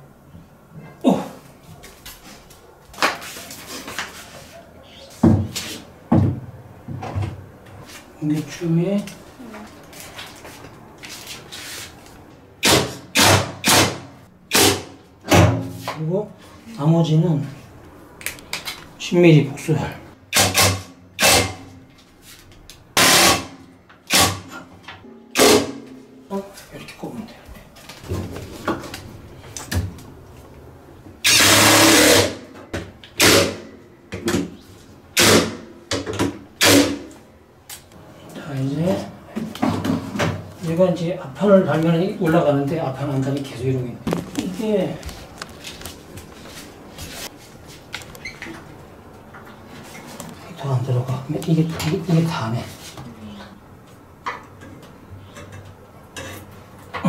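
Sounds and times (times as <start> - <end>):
power drill driving bolts: 23.0 - 24.4, 31.2 - 32.4.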